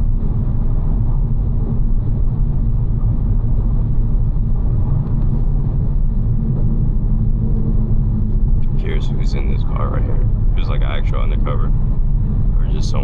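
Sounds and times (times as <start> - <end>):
car engine drone: 0.0 - 13.0
road noise: 6.9 - 13.0.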